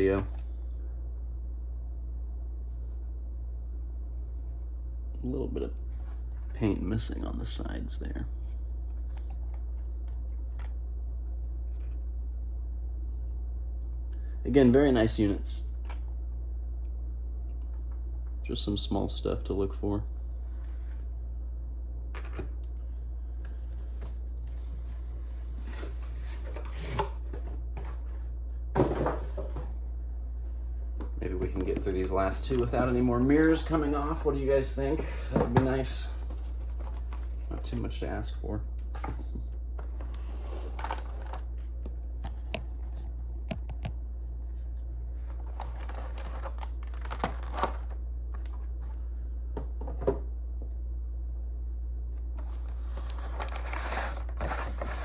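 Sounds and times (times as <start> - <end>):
steady low hum: 0.0 - 55.0
packaging rustling: 39.9 - 41.5, 45.2 - 48.5, 52.5 - 55.0.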